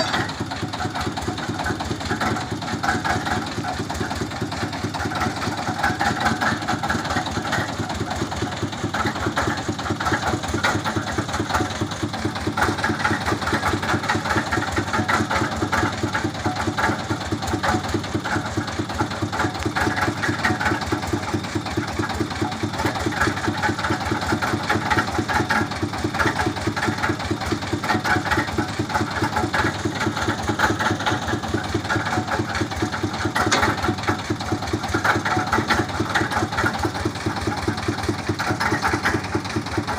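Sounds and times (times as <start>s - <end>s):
drilling rig engine pulsing: 0.0s - 1.2s.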